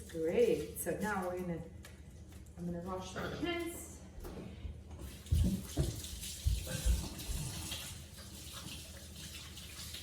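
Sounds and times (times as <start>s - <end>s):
tap running into a sink: 5.0s - 10.0s.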